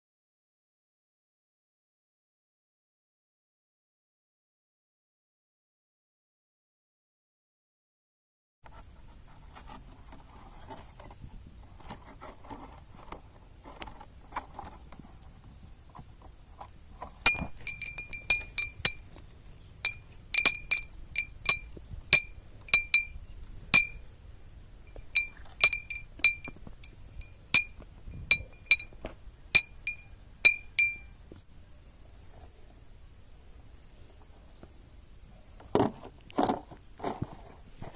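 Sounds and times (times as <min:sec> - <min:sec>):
metal striking with sharp clink: 0:17.2 - 0:19.0, 0:19.8 - 0:23.2, 0:23.8 - 0:24.0, 0:24.9 - 0:29.0, 0:29.6 - 0:31.2.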